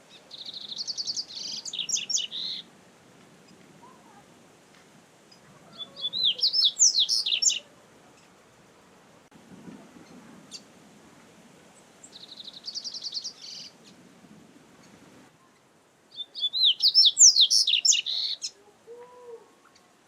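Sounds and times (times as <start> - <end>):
bird singing high whistles: 6.0 - 7.6, 16.2 - 18.4.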